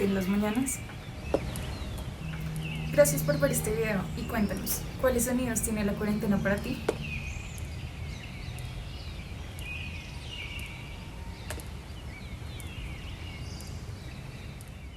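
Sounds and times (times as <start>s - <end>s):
low background rumble: 0.0s - 10.1s
birds chirping: 0.0s - 14.9s.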